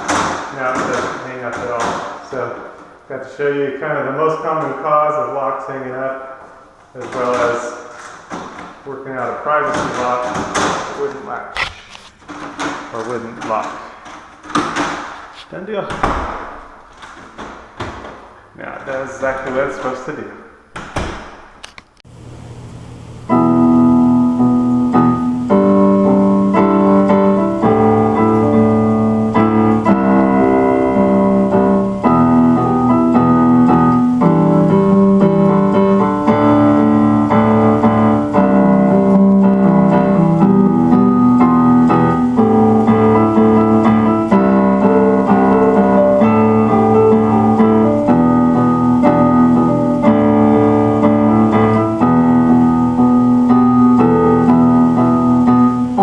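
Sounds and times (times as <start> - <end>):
piano playing held chords: 22.2 - 56.0.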